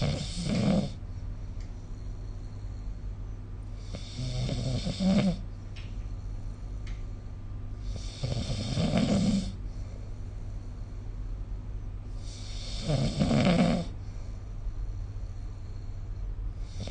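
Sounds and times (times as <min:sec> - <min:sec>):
person snoring: 0:00.0 - 0:01.0, 0:03.8 - 0:05.4, 0:07.8 - 0:09.6, 0:12.2 - 0:14.0
steady low hum: 0:00.0 - 0:16.9.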